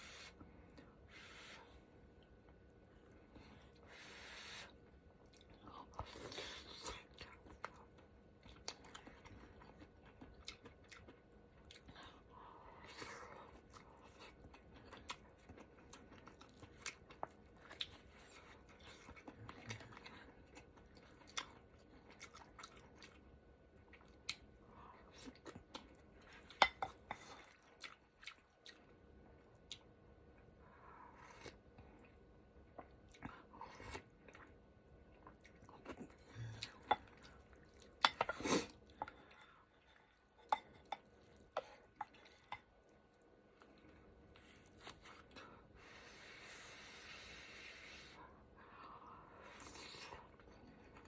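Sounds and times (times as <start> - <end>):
chewing and mouth sounds: 5.2 - 45.6.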